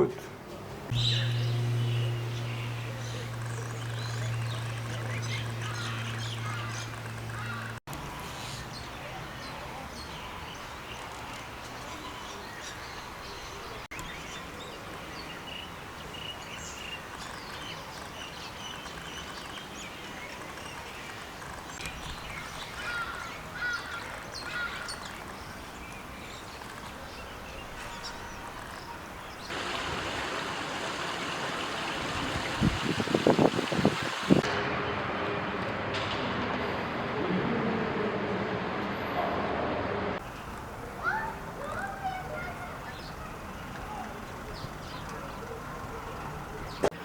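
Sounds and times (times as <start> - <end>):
outdoor background noise: 0.0 - 47.0
small birds chirping: 0.9 - 29.6, 40.2 - 46.9.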